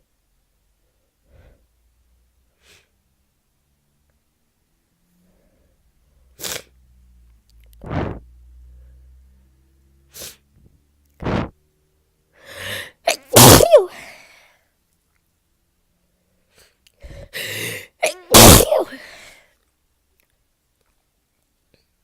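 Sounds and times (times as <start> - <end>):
person sneezing: 7.8 - 8.2, 12.6 - 14.2, 17.1 - 19.3.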